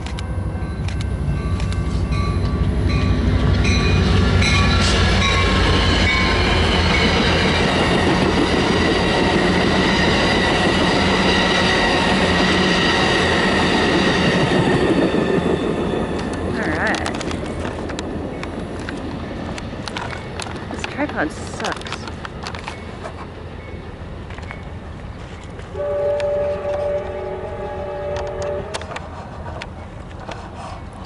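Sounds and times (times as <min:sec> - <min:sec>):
diesel locomotive rumble: 0:00.0 - 0:31.0
train cars rolling past: 0:00.0 - 0:31.0
wheels squealing on rails: 0:00.4 - 0:17.7.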